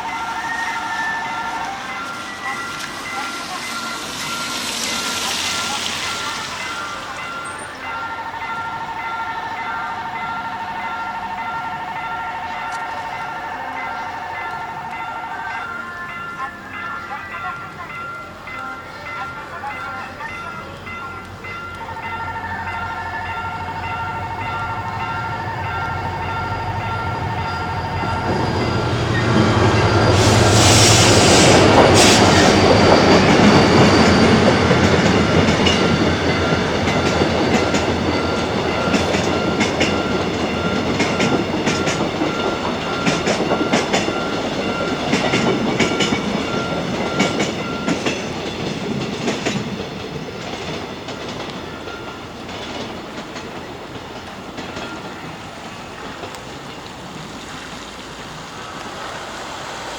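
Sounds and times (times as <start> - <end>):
crossing warning signal dinging: 0.0 - 56.8
train passing: 0.0 - 59.9
wheels clacking over rail joints: 31.4 - 59.3.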